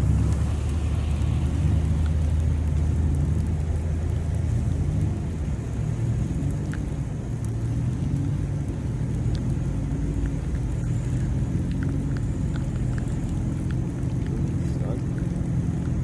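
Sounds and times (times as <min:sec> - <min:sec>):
engine and road drone: 0:00.0 - 0:16.0
faint ticks: 0:06.2 - 0:16.0.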